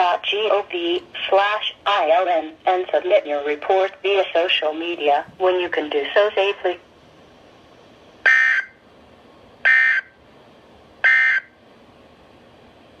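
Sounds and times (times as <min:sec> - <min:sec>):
harsh digital data tone bursts: 0:08.3 - 0:08.8, 0:09.7 - 0:10.1, 0:11.0 - 0:11.5.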